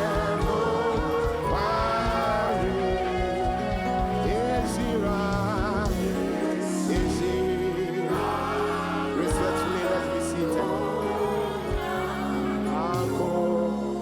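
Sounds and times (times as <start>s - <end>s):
sustained instrumental chords: 0.0s - 14.0s
voices singing: 0.0s - 14.0s.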